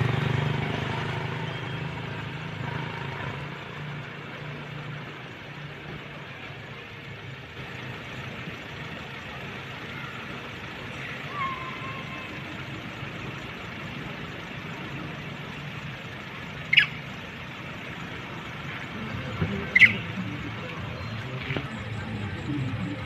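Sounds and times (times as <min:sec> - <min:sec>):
monkey squeals: 0:11.3 - 0:12.4, 0:16.7 - 0:17.0, 0:19.7 - 0:20.1
steady low rumble: 0:17.8 - 0:23.0.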